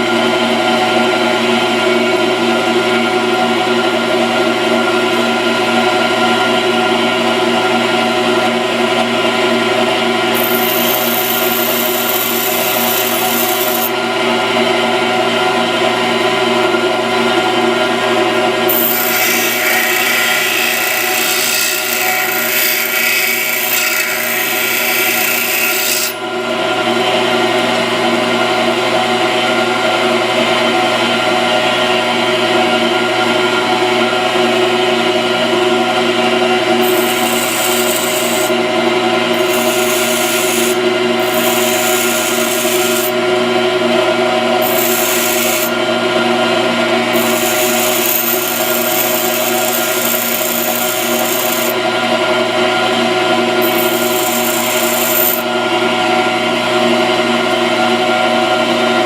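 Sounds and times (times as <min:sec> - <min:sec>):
grinder wheel grinding steel: 0:10.3 - 0:14.0, 0:18.6 - 0:26.2, 0:36.6 - 0:43.2, 0:44.5 - 0:45.8, 0:46.4 - 0:52.1, 0:52.8 - 0:55.6.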